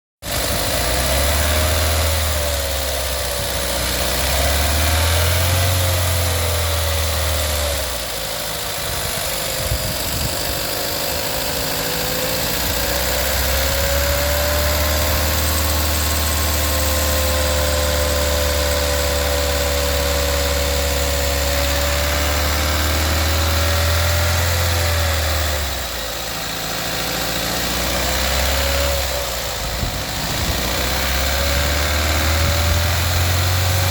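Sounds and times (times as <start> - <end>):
car engine idling: 0.2 - 33.9.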